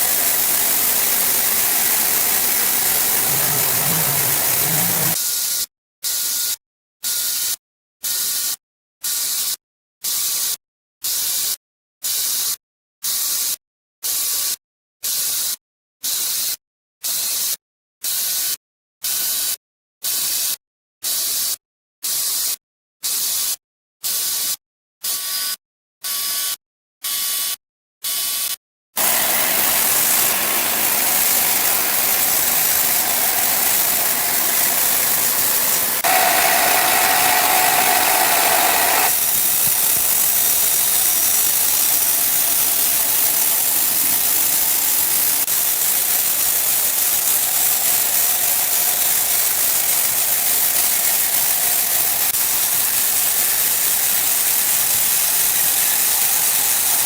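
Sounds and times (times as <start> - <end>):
sawmill machinery hissing: 0.0 - 5.2, 29.0 - 57.0.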